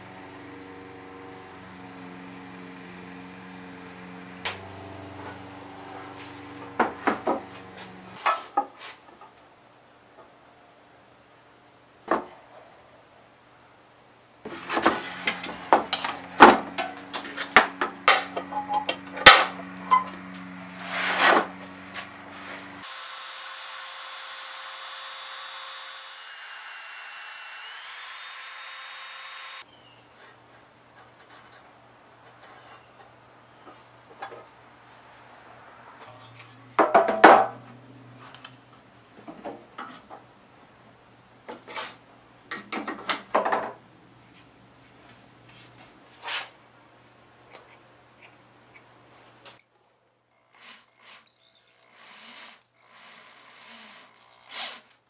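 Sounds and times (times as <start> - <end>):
tools scraping steel guitar body: 14.5 - 22.8.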